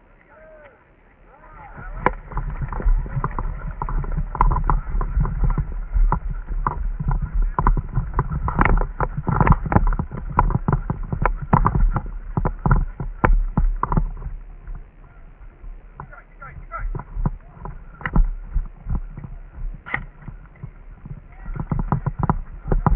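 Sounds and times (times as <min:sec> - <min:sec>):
low rumble: 0:00.9 - 0:22.9
sharp clicks and knocks: 0:01.8 - 0:14.9, 0:15.6 - 0:22.9.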